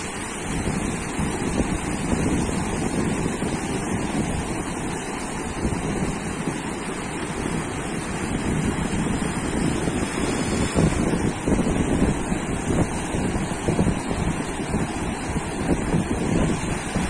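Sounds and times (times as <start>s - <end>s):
sea surf washing onto beach: 0.0s - 17.0s
wind buffeting microphone: 0.0s - 17.0s.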